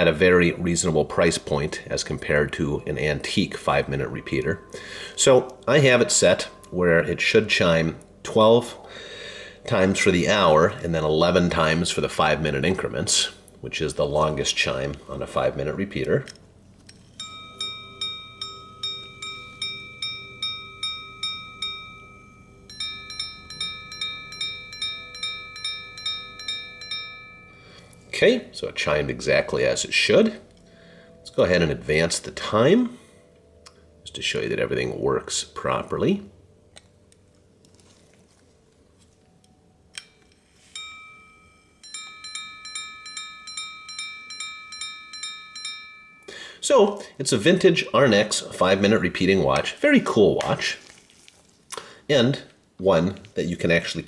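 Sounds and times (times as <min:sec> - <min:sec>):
two-tone watch chime: 0:16.9 - 0:32.6, 0:40.0 - 0:46.7
pocket watch gong strikes: 0:17.0 - 0:30.1, 0:40.0 - 0:46.6.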